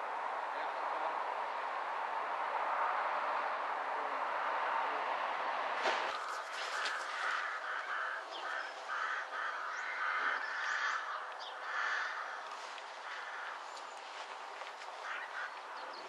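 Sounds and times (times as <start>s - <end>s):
harsh rasping bird calls: 6.1s - 16.0s.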